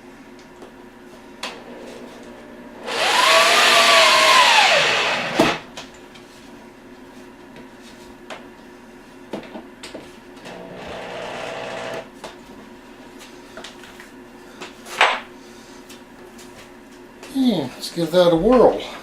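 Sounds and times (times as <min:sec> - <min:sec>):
power drill driving screw: 0:02.8 - 0:05.6, 0:10.5 - 0:12.1.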